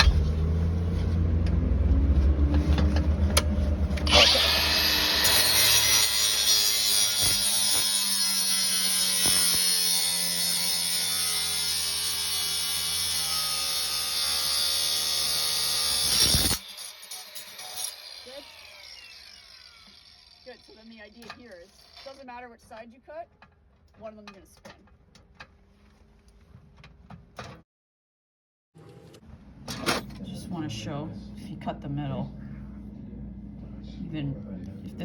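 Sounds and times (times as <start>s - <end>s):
saw motor running: 3.9s - 22.4s
saw blade screeching on metal: 4.1s - 12.4s, 13.1s - 22.3s.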